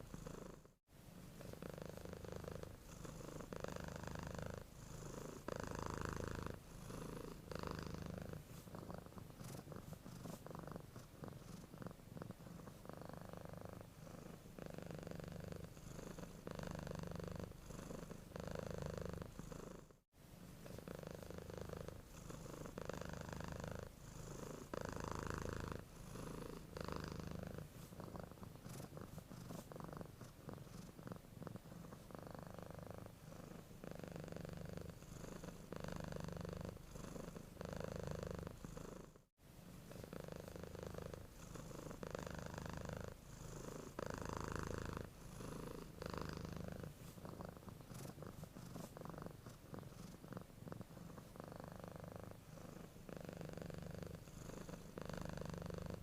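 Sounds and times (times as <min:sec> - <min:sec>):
cat purring: 0:00.0 - 0:56.0.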